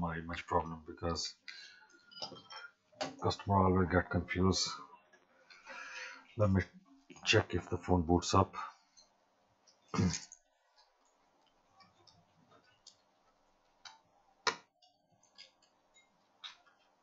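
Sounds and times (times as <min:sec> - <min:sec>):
faint steady hum: 0:00.0 - 0:17.0
small parts and tools clicking: 0:08.9 - 0:17.0.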